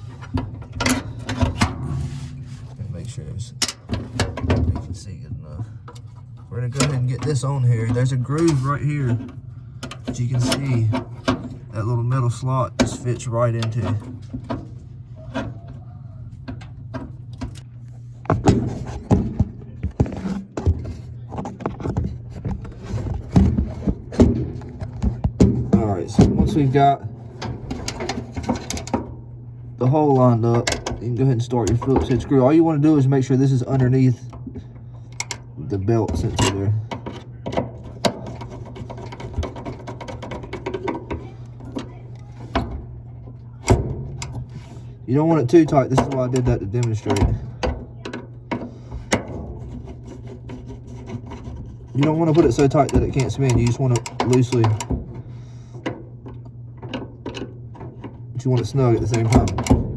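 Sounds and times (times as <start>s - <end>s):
clicks and knocks on metal: 0.0s - 1.9s, 3.6s - 5.0s, 12.8s - 29.2s, 33.7s - 59.9s.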